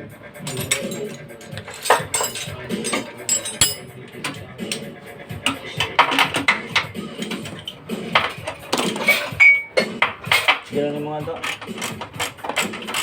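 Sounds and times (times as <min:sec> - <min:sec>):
metal tools clinking: 0:00.4 - 0:13.0.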